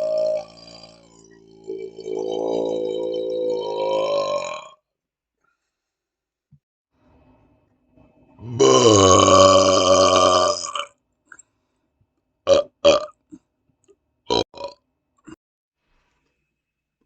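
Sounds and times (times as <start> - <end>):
man burping: 0.0 - 4.8, 8.4 - 10.9, 12.5 - 13.2, 14.3 - 15.4.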